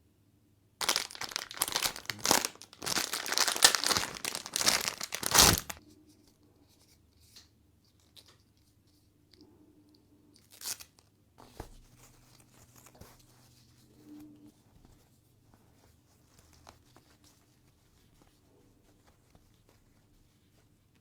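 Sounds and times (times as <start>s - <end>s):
packaging crinkling tear: 0.8s - 5.8s, 10.4s - 11.1s.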